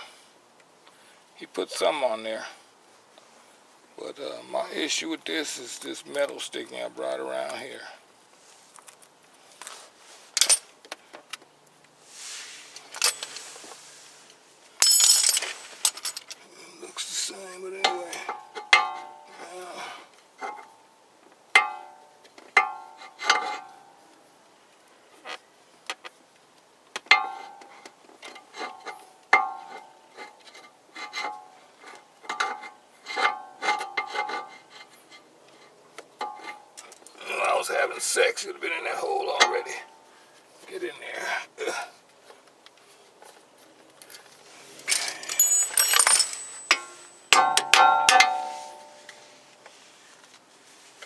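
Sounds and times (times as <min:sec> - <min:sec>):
metal hand tools clinking: 0:14.8 - 0:16.4, 0:44.8 - 0:49.5
metal scraping: 0:44.4 - 0:50.0.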